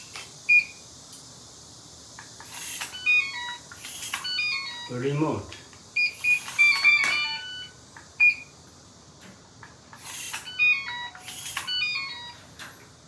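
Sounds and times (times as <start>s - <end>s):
sharp noisy clicks: 2.2s - 3.0s, 3.7s - 4.4s, 5.7s - 7.3s, 9.6s - 10.6s, 11.2s - 11.8s
high electronic beeps: 10.4s - 12.4s.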